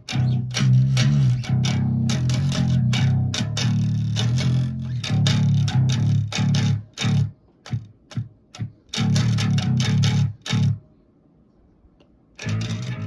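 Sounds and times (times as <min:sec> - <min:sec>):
distorted electric bass riff: 0:00.0 - 0:10.8, 0:12.4 - 0:13.0.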